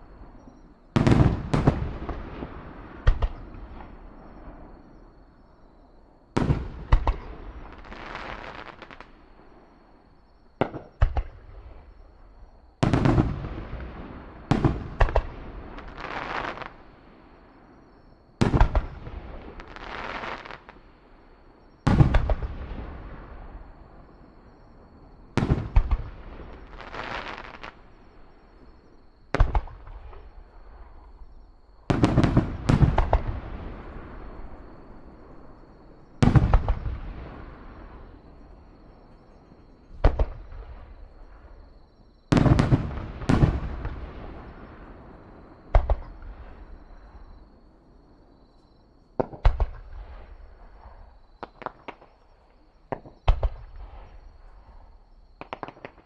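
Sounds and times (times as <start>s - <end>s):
fireworks bangs: 0.0s - 4.7s, 10.6s - 12.0s, 12.8s - 17.7s, 18.4s - 20.8s, 21.8s - 41.6s, 42.3s - 47.4s, 49.2s - 56.0s
fireworks crackling: 6.4s - 9.7s, 12.8s - 17.6s, 18.4s - 21.2s, 25.4s - 28.1s, 31.9s - 38.2s, 49.2s - 56.0s
fireworks crackling fizz: 18.4s - 20.9s, 25.4s - 28.0s, 55.4s - 56.0s.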